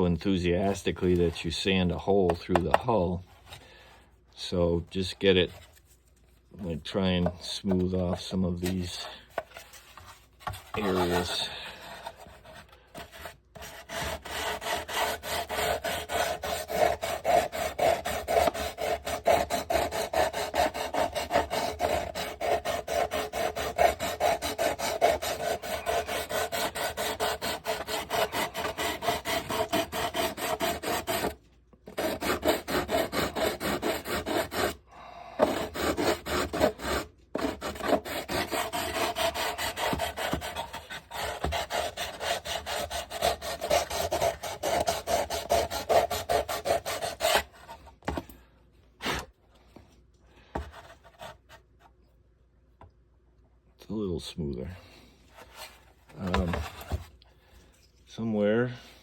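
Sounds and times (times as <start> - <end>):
sandpaper rubbing on hull: 10.8 - 12.5, 13.1 - 31.4, 32.0 - 34.8, 35.4 - 47.5.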